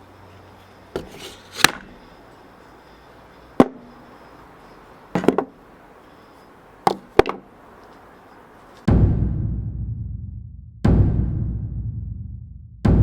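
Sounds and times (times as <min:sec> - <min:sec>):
sharp wooden knocks: 0:05.2 - 0:05.6
deep drum-like boom: 0:08.9 - 0:13.0.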